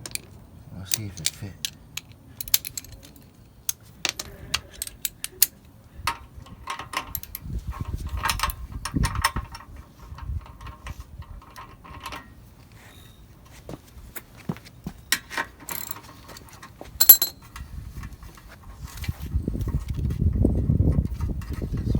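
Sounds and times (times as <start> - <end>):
hand tools clinking on metal: 0.0 - 7.4, 14.8 - 17.6.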